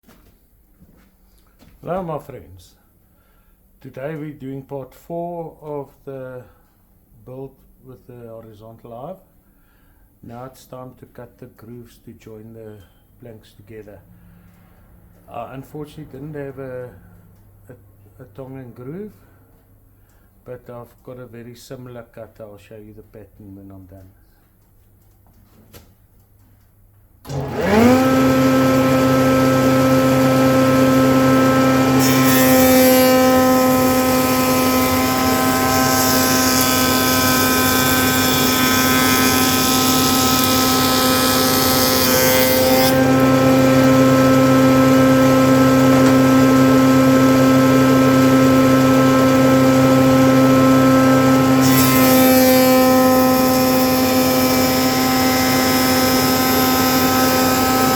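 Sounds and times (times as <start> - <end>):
power cutter whining: 27.2 - 57.9.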